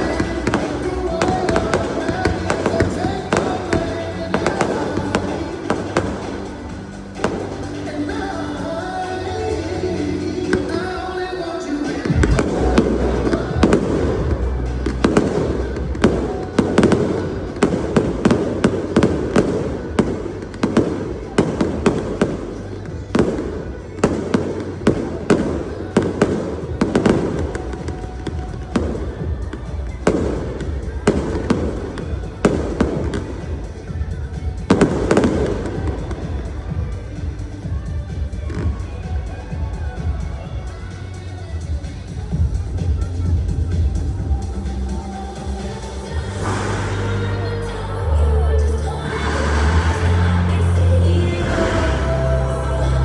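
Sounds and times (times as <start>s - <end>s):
fireworks bangs and cracks: 0.0s - 8.9s, 9.9s - 40.8s, 49.4s - 53.0s
deep firework booms: 12.0s - 37.4s.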